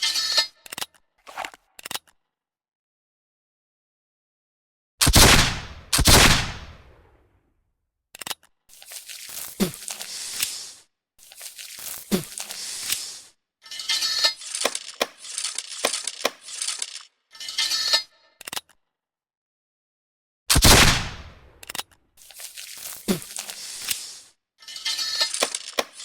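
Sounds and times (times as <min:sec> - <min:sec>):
gun reloading scraping and sliding: 0:00.0 - 0:02.1, 0:08.2 - 0:18.7, 0:21.6 - 0:26.0
gun clicks and rattles: 0:00.6 - 0:02.2, 0:08.1 - 0:18.8, 0:21.6 - 0:26.0
pistol shots with echo: 0:20.5 - 0:21.3.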